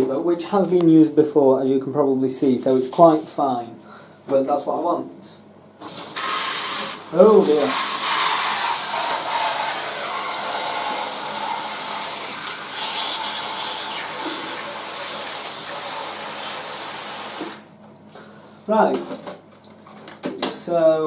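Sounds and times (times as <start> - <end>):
shower spray hissing on plastic: 5.8 - 17.6.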